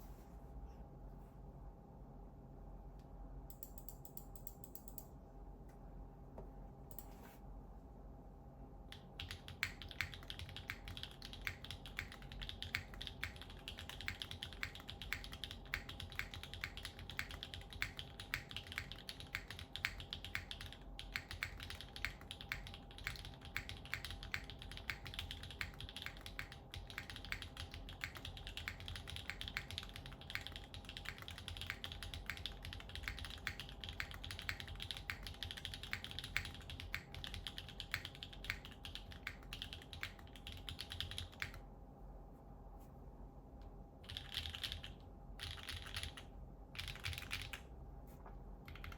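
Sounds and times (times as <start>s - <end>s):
mechanical keyboard typing: 8.9s - 41.6s, 44.0s - 47.7s, 48.7s - 48.9s.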